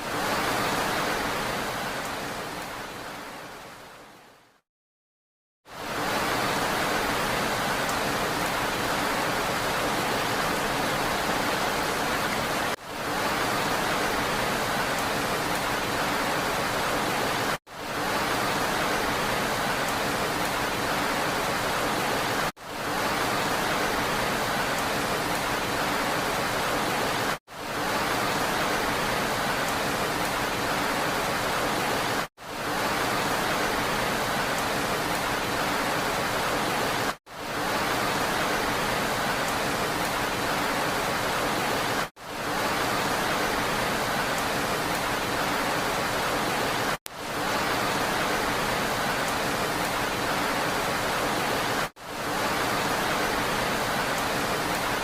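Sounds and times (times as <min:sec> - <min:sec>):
steady rain hiss: 0:00.0 - 0:04.6, 0:05.6 - 0:55.0.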